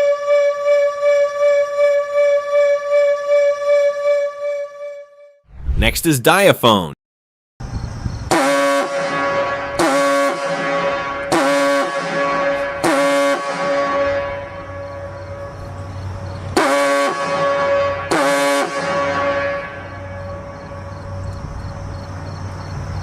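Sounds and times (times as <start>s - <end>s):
foghorn blasts: 0.0s - 5.0s, 8.3s - 15.8s, 16.5s - 20.9s.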